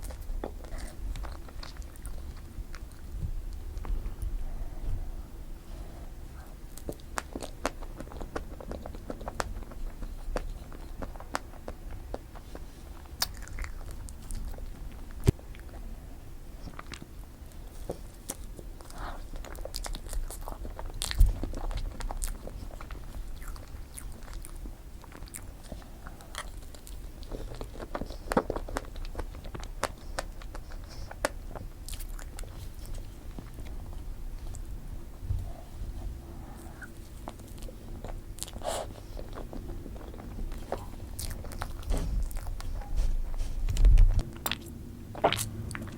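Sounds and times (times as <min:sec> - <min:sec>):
close-miked eating and chewing: 0:00.0 - 0:45.9
mouth clicks and wet sounds: 0:36.5 - 0:45.9.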